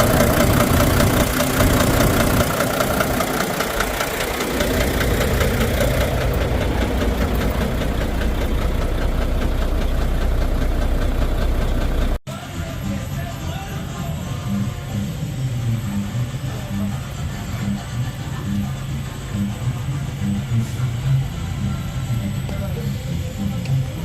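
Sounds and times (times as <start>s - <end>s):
diesel engine idling with knock: 0.0s - 12.2s.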